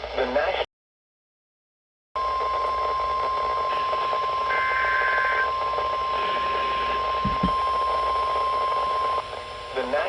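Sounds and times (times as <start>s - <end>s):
steady alarm tone: 2.2s - 9.9s
radio hiss: 2.9s - 10.0s.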